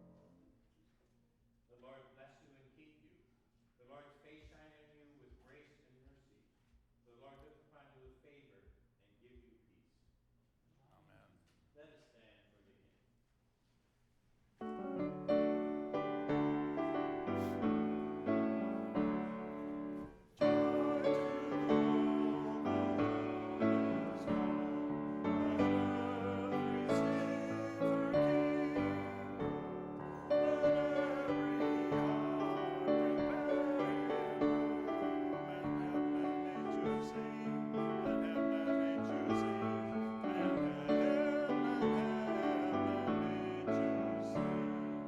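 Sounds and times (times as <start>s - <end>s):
slow chordal piano: 14.6s - 45.0s.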